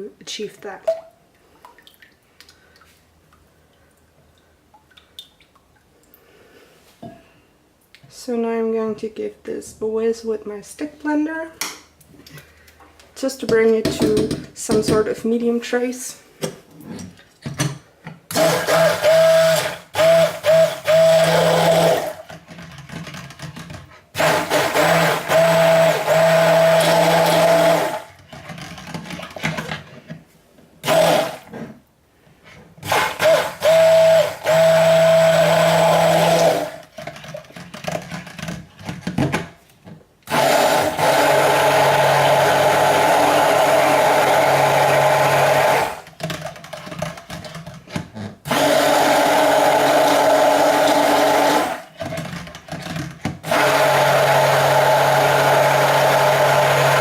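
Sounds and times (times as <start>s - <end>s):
stick blender running: 18.3s - 22.3s, 24.2s - 28.2s, 30.8s - 31.5s, 32.8s - 36.9s, 40.3s - 46.1s, 48.4s - 57.0s.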